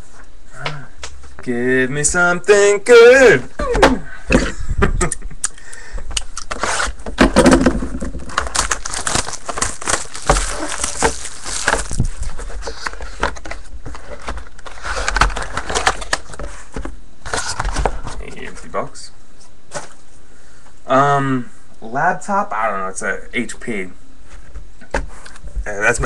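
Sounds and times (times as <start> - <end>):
trading cards clicking and rustling: 8.2 - 16.4.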